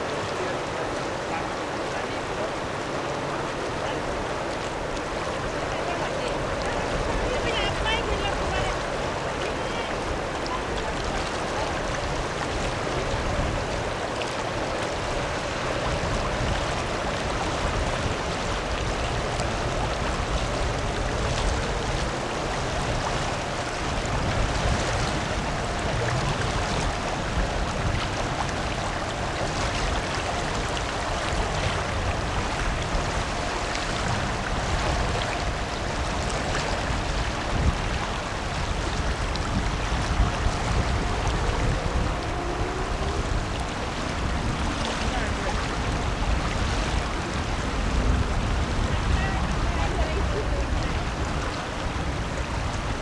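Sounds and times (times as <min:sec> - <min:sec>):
river water rushing: 0:00.0 - 0:53.0
wind: 0:00.0 - 0:53.0
low rumble: 0:34.4 - 0:51.4.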